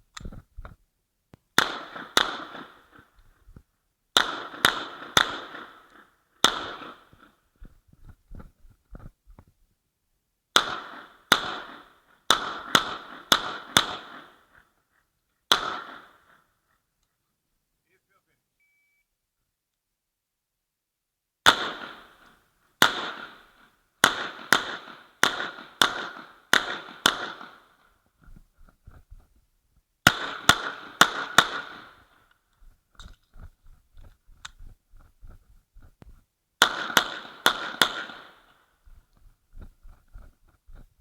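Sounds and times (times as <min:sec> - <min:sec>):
pistol shots with echo: 0:01.6 - 0:03.1, 0:04.2 - 0:07.4, 0:10.6 - 0:14.7, 0:15.5 - 0:16.5, 0:21.4 - 0:28.0, 0:30.0 - 0:32.2, 0:36.6 - 0:38.7.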